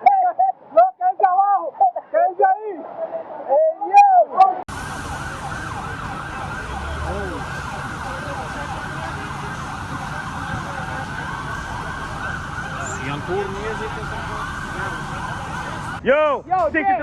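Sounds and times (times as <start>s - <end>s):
street noise: 0.0s - 17.0s
emergency siren wailing: 4.7s - 16.0s.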